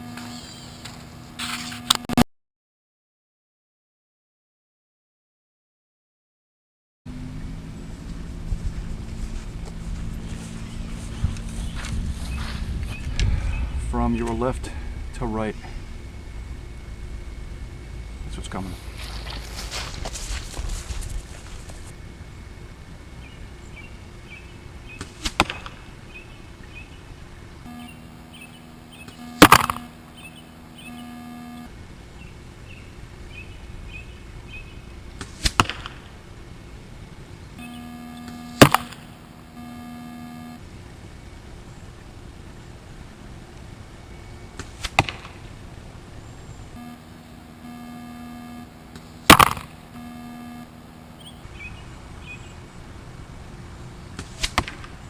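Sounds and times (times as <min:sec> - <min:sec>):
arrow striking target: 0:29.4 - 0:29.8, 0:35.2 - 0:36.0, 0:38.6 - 0:39.0, 0:49.3 - 0:49.7, 0:54.2 - 0:54.9.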